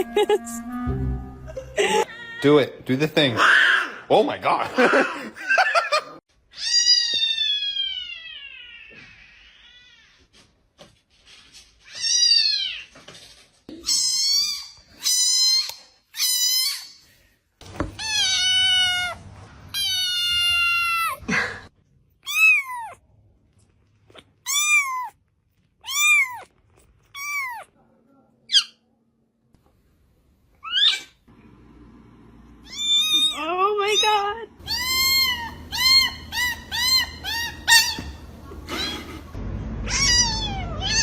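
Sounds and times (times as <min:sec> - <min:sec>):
cat meowing: 0:18.0 - 0:21.2, 0:22.2 - 0:23.0, 0:24.1 - 0:25.2, 0:25.8 - 0:26.5, 0:27.1 - 0:27.7, 0:32.6 - 0:39.2, 0:39.8 - 0:41.0.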